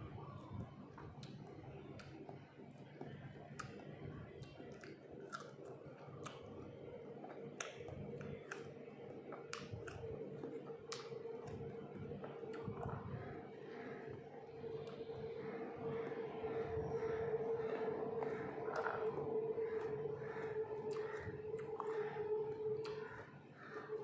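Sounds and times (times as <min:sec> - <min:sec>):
steady hum: 0:00.0 - 0:24.0
chewing fruit: 0:00.1 - 0:24.0
wet mouth clicks: 0:01.2 - 0:06.6, 0:07.4 - 0:13.0.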